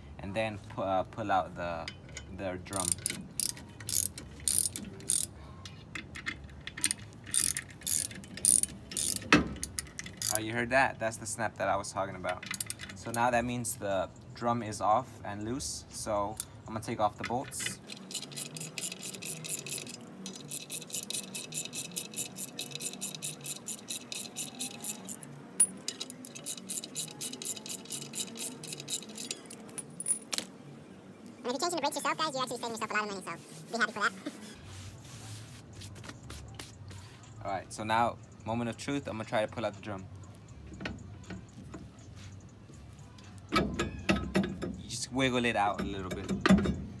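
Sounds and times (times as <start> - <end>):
ratchet wrench clicking: 2.1 - 10.5, 12.3 - 13.3, 17.2 - 30.5.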